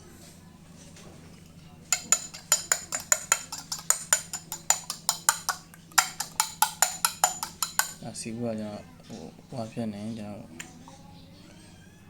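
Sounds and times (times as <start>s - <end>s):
sharp metallic taps: 1.9s - 8.0s.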